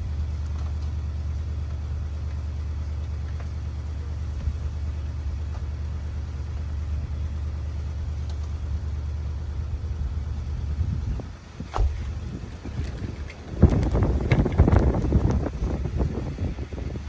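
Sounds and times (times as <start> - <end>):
low rumble: 3.7 - 17.0.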